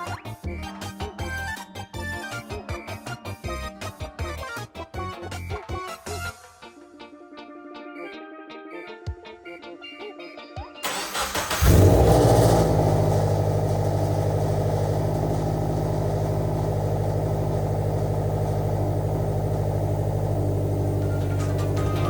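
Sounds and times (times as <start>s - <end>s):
car engine starting and idling: 10.8s - 22.0s.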